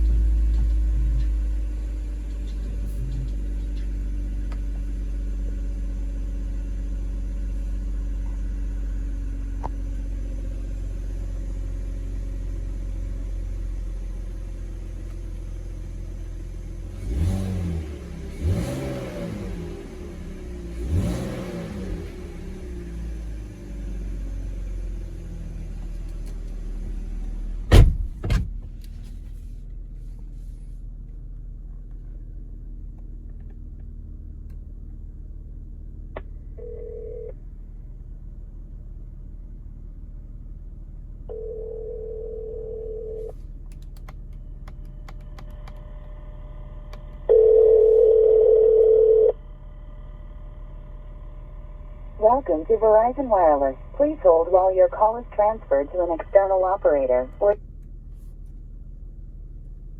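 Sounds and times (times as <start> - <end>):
car engine idling: 0.0 - 59.9
telephone ringback tone: 41.3 - 43.2, 47.3 - 49.3.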